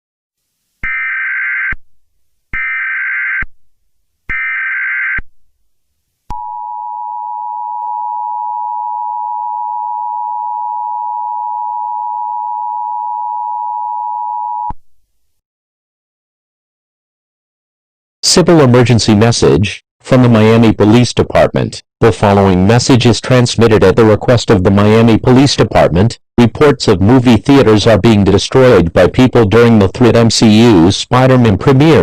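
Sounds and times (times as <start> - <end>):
two-tone alarm: 0.8 - 1.8, 2.6 - 3.5, 4.3 - 5.2, 6.3 - 14.7.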